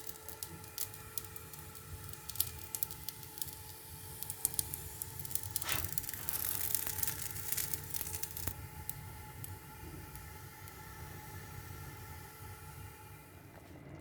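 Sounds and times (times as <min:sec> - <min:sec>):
crinkling rustle: 0:05.2 - 0:08.5.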